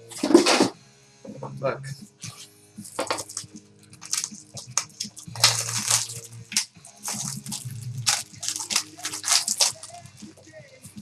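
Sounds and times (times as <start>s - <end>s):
plastic packaging crinkling: 2.2s - 10.5s.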